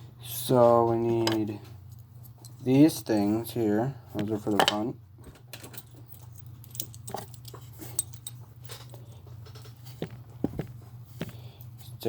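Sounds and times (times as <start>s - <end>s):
steady low hum: 0.0s - 12.0s
plastic parts clicking and rattling: 5.4s - 10.6s.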